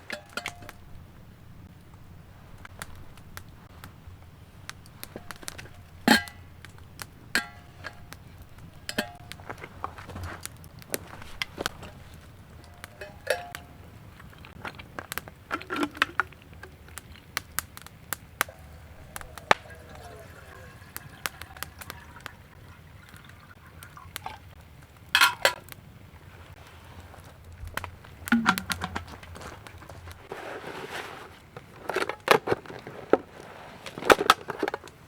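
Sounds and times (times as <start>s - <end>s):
hard objects knocking and clinking: 27.7s - 30.2s.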